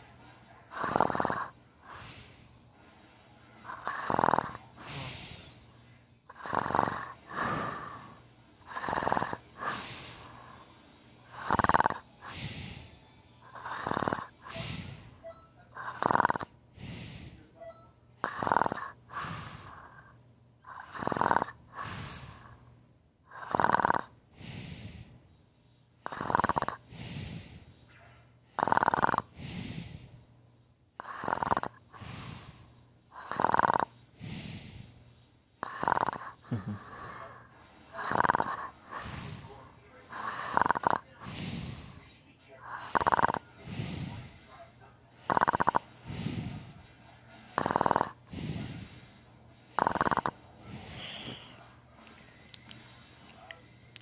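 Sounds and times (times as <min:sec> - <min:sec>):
man snoring heavily: 0:00.7 - 0:02.3, 0:03.7 - 0:05.5, 0:06.3 - 0:10.6, 0:11.3 - 0:12.8, 0:13.5 - 0:15.1, 0:15.8 - 0:17.4, 0:18.2 - 0:20.0, 0:20.7 - 0:22.4, 0:23.3 - 0:25.1, 0:26.0 - 0:27.6, 0:28.6 - 0:30.1, 0:31.0 - 0:32.6, 0:33.2 - 0:34.9, 0:35.6 - 0:37.4, 0:38.0 - 0:42.0, 0:42.7 - 0:44.3, 0:45.2 - 0:46.8, 0:47.5 - 0:48.9, 0:49.8 - 0:51.6.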